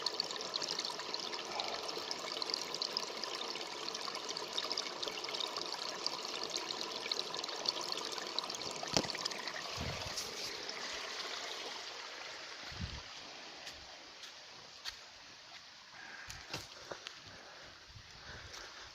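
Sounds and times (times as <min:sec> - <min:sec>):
water trickling and splashing: 0:00.0 - 0:15.0.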